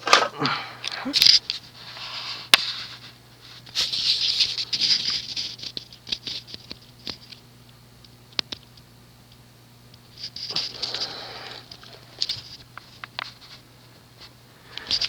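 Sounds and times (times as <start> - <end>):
ceiling fan motor hum: 0.0 - 15.0.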